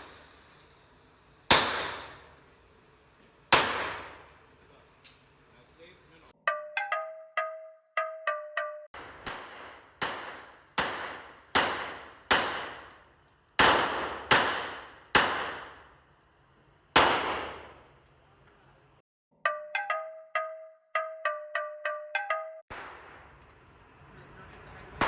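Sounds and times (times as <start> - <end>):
handgun gunshots with echo: 1.5 - 2.3, 3.5 - 4.3, 9.0 - 13.0, 13.6 - 15.9, 17.0 - 17.8.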